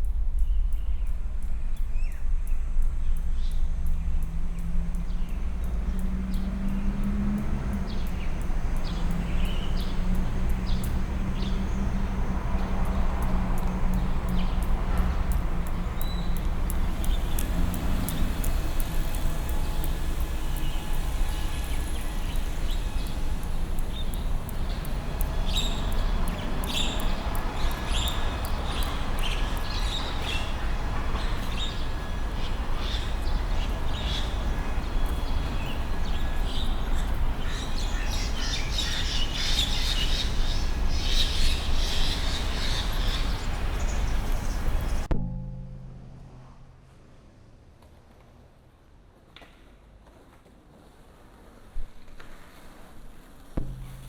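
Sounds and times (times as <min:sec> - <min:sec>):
steady droning hum: 0:00.0 - 0:47.8, 0:53.6 - 0:54.0
low city rumble: 0:00.0 - 0:54.0
bird chirps: 0:15.7 - 0:45.1.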